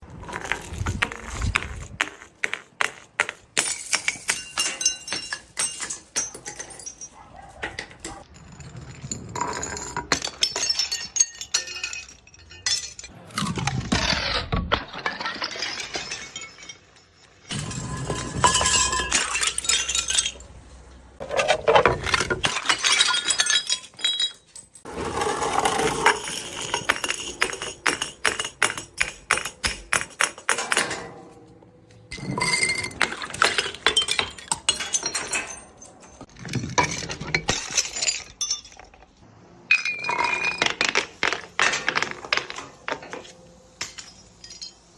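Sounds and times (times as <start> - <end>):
glass bottles shattering: 1.2 - 7.2, 7.8 - 13.1, 13.7 - 31.2, 32.1 - 43.2, 43.8 - 44.9
broken glass shards clinking: 3.6 - 8.2, 8.9 - 13.1, 15.0 - 20.8, 22.0 - 24.9, 32.1 - 41.0, 43.8 - 44.9.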